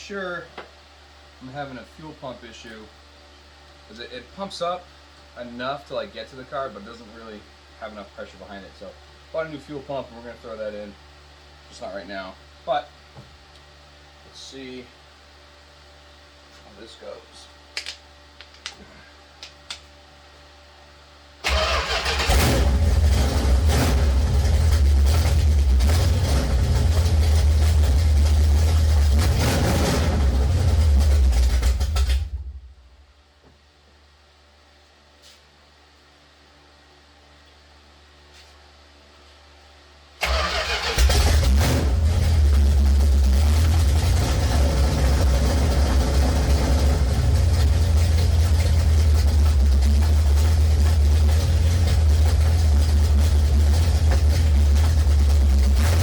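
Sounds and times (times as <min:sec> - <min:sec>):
car engine starting and running: 0:21.4 - 0:32.8, 0:40.2 - 0:56.0.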